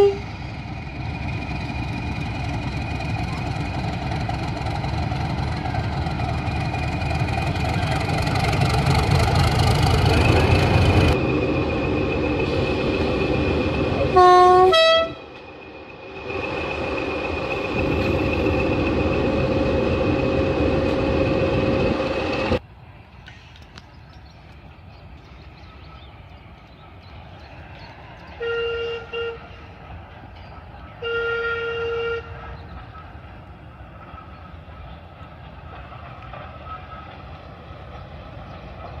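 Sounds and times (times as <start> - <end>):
train horn blasts: 0.0 - 0.4, 14.0 - 15.3, 28.4 - 29.6, 31.0 - 32.5
train running close by: 0.0 - 39.0.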